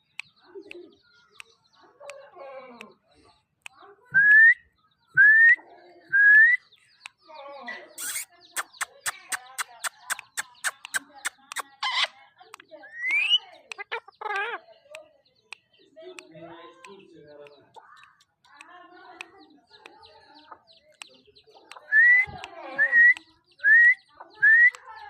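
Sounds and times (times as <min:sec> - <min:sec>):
soft parrot chatter: 0:00.0 - 0:25.0
sharp clicks: 0:08.0 - 0:23.3.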